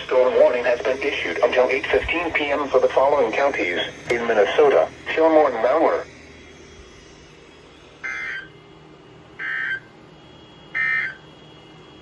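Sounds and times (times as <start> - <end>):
digital data tone bursts: 8.0 - 8.6, 9.4 - 9.9, 10.7 - 11.4.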